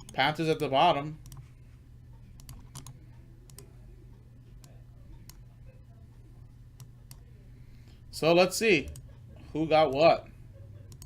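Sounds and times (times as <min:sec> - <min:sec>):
computer clicks: 0:00.0 - 0:00.2, 0:02.3 - 0:03.7, 0:08.8 - 0:09.1
steady low hum: 0:00.0 - 0:11.0.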